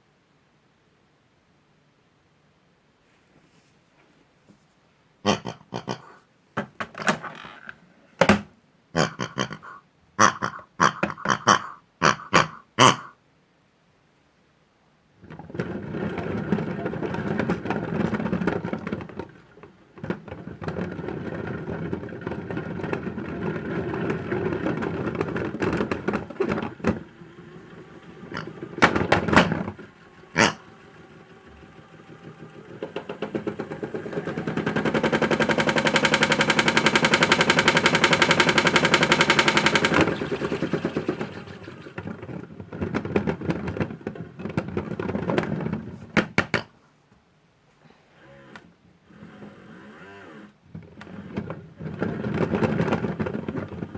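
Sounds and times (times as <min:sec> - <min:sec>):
toy washing machine running: 0:15.2 - 0:46.0, 0:50.8 - 0:53.9
plastic figures rattling in drum: 0:15.2 - 0:46.7, 0:50.7 - 0:53.9.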